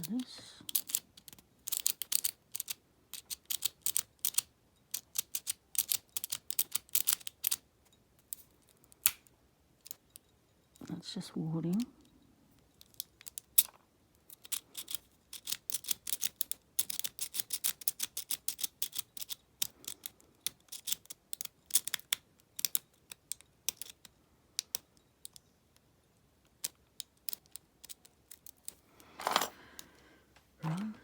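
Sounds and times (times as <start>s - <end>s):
lock pick clicking in padlock: 0.7s - 7.6s, 12.8s - 13.7s, 14.3s - 25.5s, 26.4s - 29.9s.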